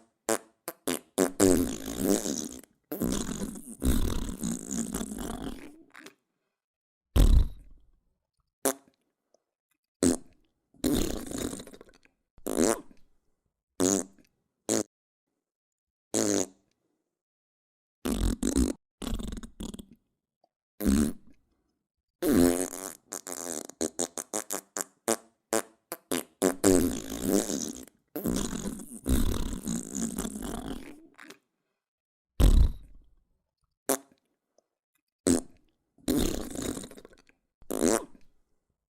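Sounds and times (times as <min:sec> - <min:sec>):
farts: 0:00.0 - 0:06.2, 0:07.2 - 0:07.8, 0:10.0 - 0:13.0, 0:13.8 - 0:14.9, 0:16.2 - 0:16.6, 0:18.0 - 0:20.0, 0:20.8 - 0:21.4, 0:22.2 - 0:31.4, 0:32.4 - 0:33.0, 0:33.9 - 0:34.2, 0:35.3 - 0:38.3.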